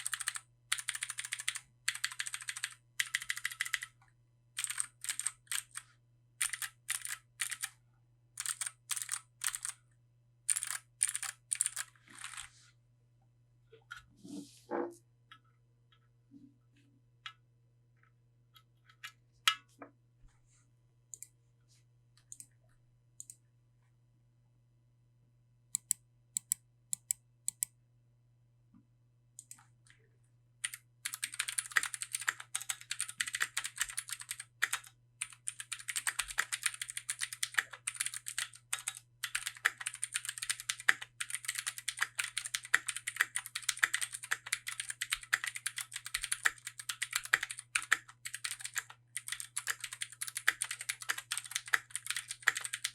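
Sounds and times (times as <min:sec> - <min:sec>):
mechanical keyboard typing: 0:00.0 - 0:04.0, 0:04.6 - 0:05.8, 0:06.4 - 0:07.8, 0:08.4 - 0:09.8, 0:10.5 - 0:12.5, 0:25.8 - 0:27.7, 0:30.6 - 0:52.9.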